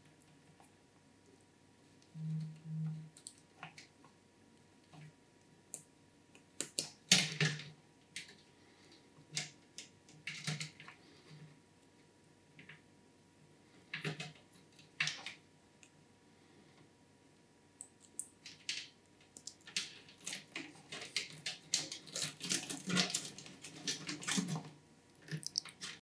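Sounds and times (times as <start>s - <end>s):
computer hardware clicks and taps: 5.7s - 8.4s, 17.8s - 26.0s.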